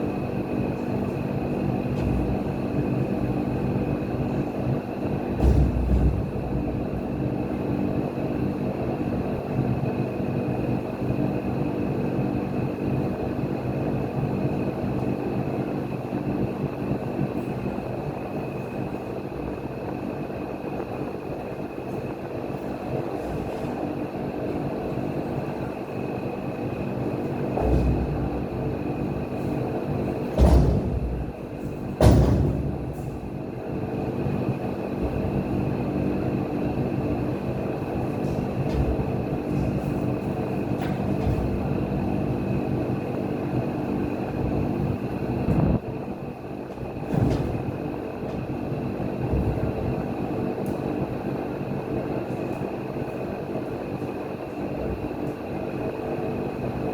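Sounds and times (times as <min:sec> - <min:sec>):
machine running with low hum: 0:00.0 - 0:56.9
loud knocks: 0:27.5 - 0:28.6, 0:29.3 - 0:33.4, 0:46.8 - 0:48.5.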